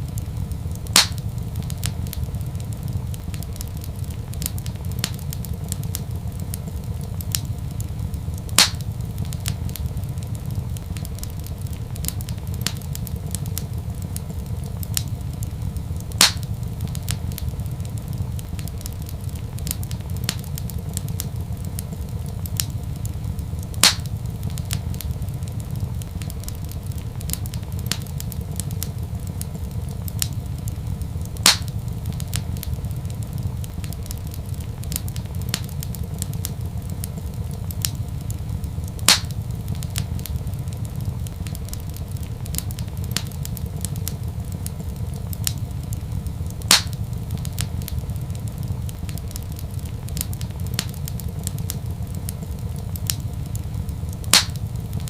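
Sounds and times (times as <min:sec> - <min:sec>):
loud fire pops: 0:00.0 - 0:55.0
low fire rumble: 0:00.0 - 0:55.0
wood fire crackling: 0:00.0 - 0:55.0.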